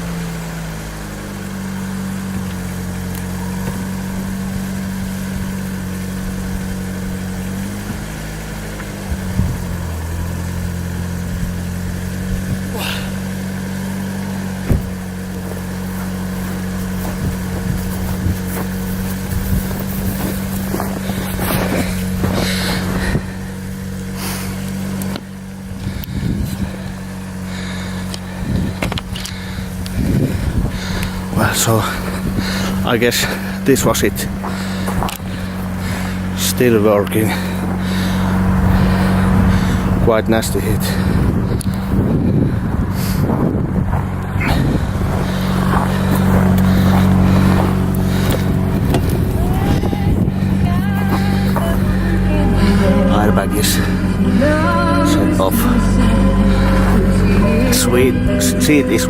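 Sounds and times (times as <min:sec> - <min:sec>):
car engine idling: 0:00.0 - 0:59.0
short engine knock: 0:11.4 - 0:51.9.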